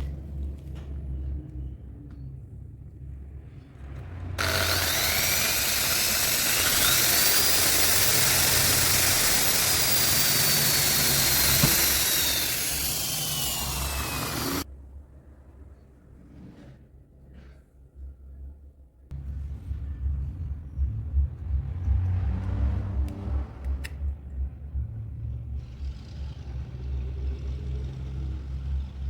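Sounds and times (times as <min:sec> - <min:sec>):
electric motor hissing and whining: 0:04.4 - 0:14.6.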